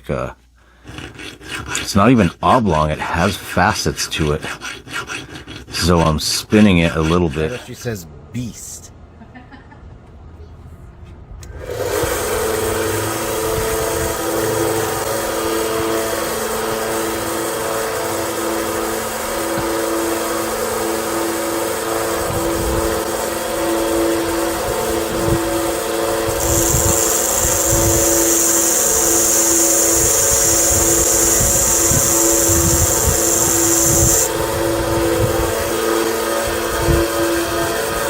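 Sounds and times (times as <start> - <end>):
power tool humming: 11.4 - 38.0
loud high-pitched hiss: 11.8 - 35.4.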